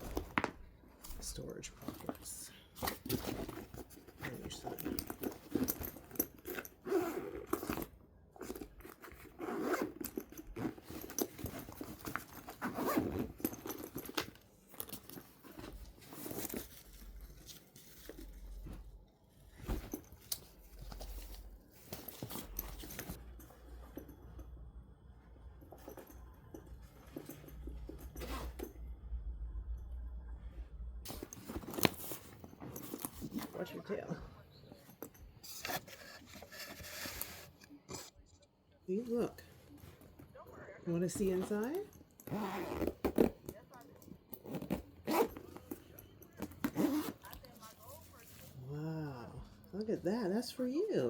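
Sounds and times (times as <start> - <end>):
fabric handling: 0.0 - 24.2, 31.0 - 38.1, 38.9 - 49.6
zipper pulled open and shut: 2.8 - 23.2, 27.1 - 28.8, 31.0 - 34.0, 41.0 - 47.4.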